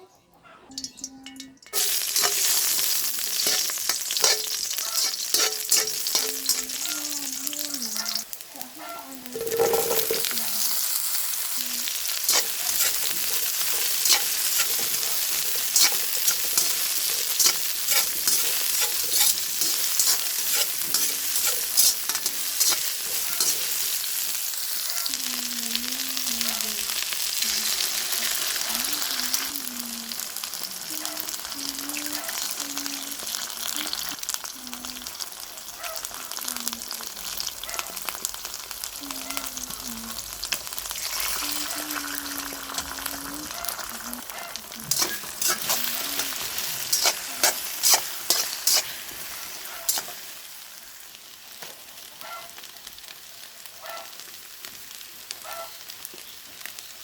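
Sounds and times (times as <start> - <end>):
food sizzling in a pan: 0.7 - 57.0
spatula scraping pan: 1.3 - 8.3, 11.8 - 24.3, 40.5 - 50.3.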